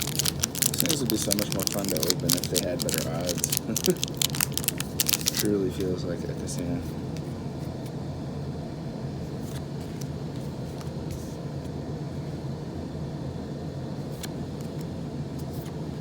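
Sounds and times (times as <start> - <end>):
foil wrapper rustling: 0.0 - 5.6
low background hum: 0.0 - 16.0.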